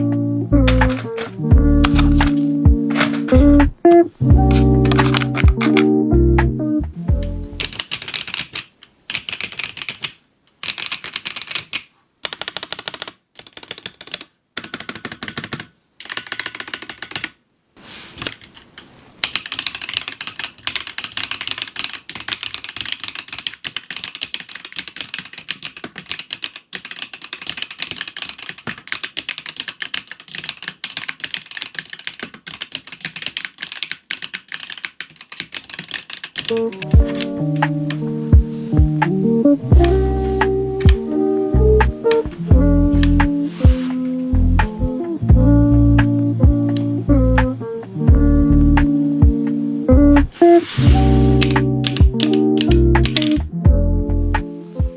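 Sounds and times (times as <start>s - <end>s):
mechanical keyboard typing: 0.0s - 6.0s, 7.2s - 17.4s, 18.2s - 45.4s, 46.0s - 48.2s, 48.8s - 53.5s.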